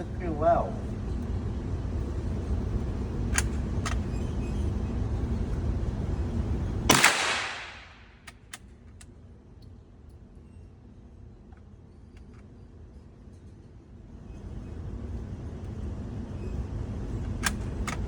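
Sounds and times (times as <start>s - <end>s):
steady low rumble: 0.0s - 11.9s
rifle shot: 6.9s - 8.3s.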